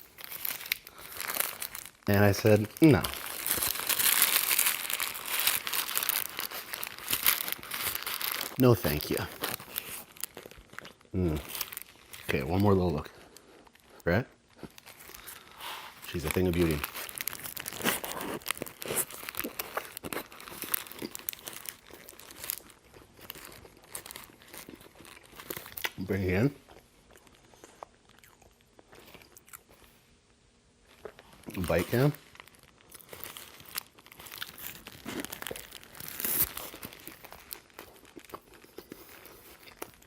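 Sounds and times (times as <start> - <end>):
burger being bitten crunching: 0.0 - 12.3, 14.6 - 26.0, 32.7 - 40.0
paper wrapper crinkling: 0.0 - 13.9, 14.7 - 26.4, 31.2 - 40.0.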